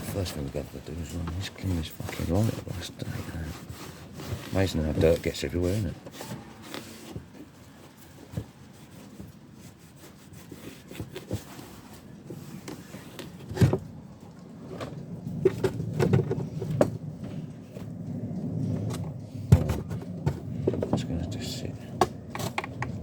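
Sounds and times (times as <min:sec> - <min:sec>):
soft rubbing and wiping: 0:00.0 - 0:13.4
plastic clicks and knocks: 0:22.0 - 0:23.0.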